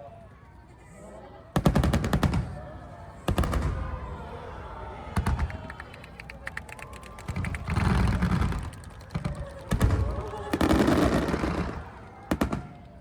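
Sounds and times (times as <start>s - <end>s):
fireworks crackling: 5.2s - 12.7s
fireworks booming: 7.2s - 12.7s.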